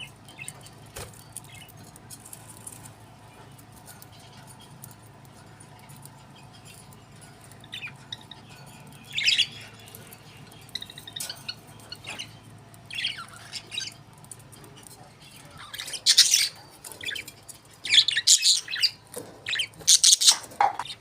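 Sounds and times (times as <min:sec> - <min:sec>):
budgerigars chirping and squawking: 0:00.0 - 0:21.0.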